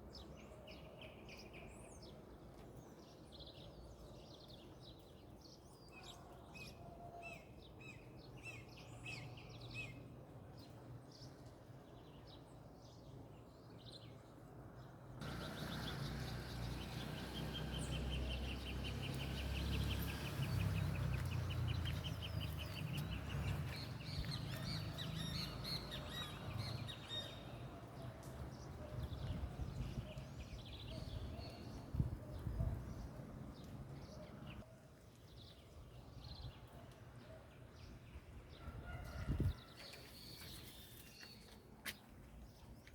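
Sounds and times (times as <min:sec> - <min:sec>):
birds calling: 0:15.2 - 0:28.0.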